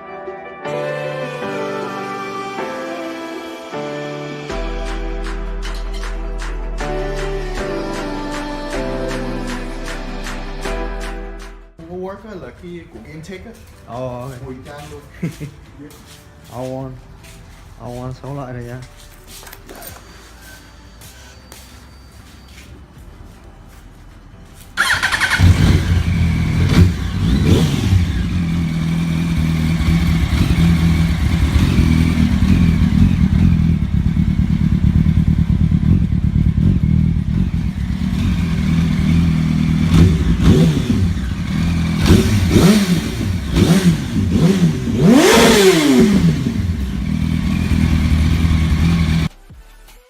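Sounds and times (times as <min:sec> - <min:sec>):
motorcycle engine idling and revving: 0:24.8 - 0:49.3.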